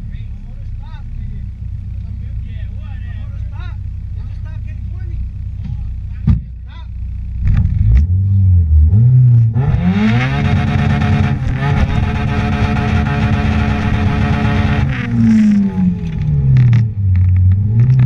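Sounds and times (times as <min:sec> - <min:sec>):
car engine revving: 0:00.0 - 0:18.0.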